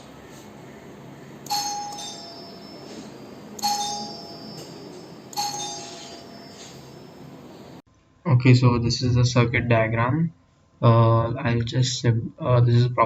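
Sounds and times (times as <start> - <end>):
bell-like chime dinging: 1.4 - 7.4.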